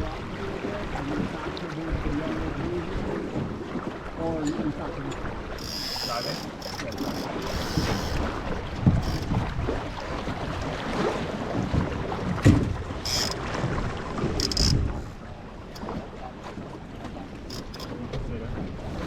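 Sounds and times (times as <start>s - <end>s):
water rushing along hull: 0.0s - 19.0s
water splashes: 0.0s - 19.0s
wind buffeting microphone: 6.3s - 16.7s.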